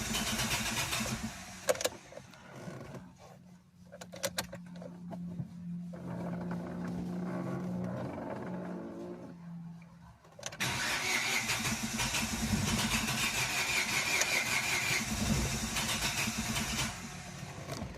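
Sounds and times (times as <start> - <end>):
car engine cranking: 0.0 - 3.1, 5.9 - 9.4, 10.2 - 17.9.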